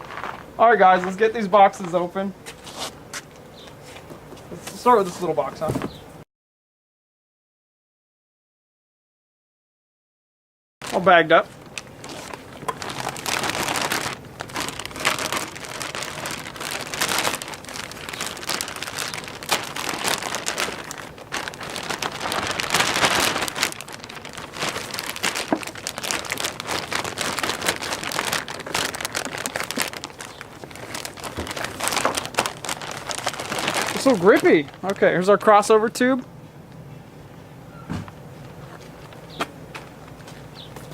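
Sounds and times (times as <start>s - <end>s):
plastic bags crinkling: 0.0s - 2.1s, 10.8s - 36.2s.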